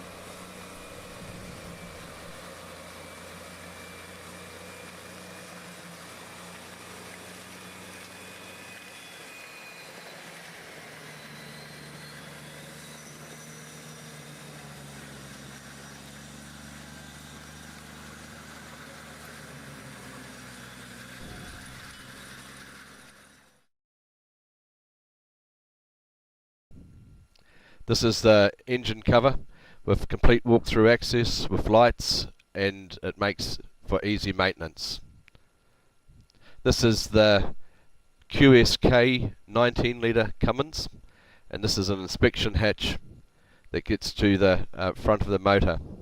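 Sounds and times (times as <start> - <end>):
large engine running: 0.0 - 23.7.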